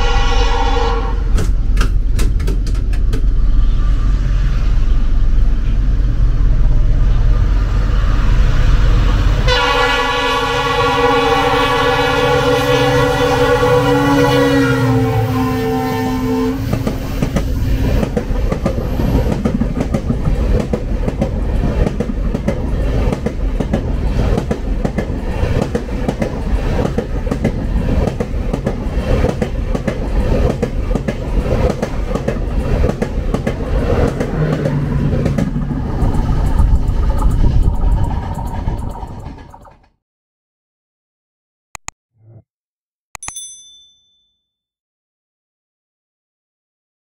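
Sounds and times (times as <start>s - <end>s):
train horn: 0.0s - 1.4s, 9.4s - 16.8s
train rumbling past: 0.0s - 40.0s.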